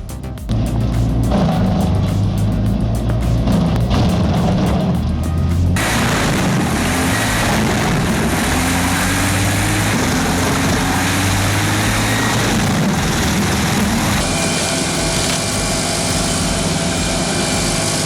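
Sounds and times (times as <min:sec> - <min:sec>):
wood chipper engine drone: 0:05.6 - 0:18.0.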